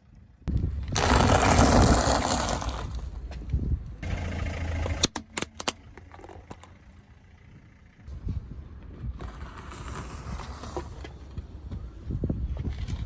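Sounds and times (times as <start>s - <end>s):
low car engine: 0.0s - 13.0s
sharp cracks under tyres: 0.5s - 3.7s, 4.8s - 7.0s, 9.2s - 13.0s
tyre noise: 0.6s - 3.9s, 9.0s - 13.0s.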